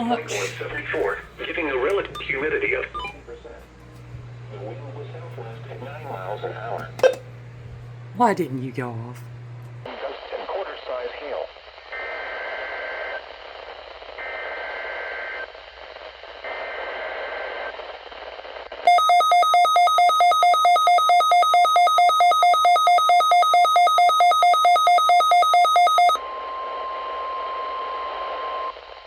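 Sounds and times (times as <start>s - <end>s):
radio alarm beeping rapidly: 18.9s - 26.2s.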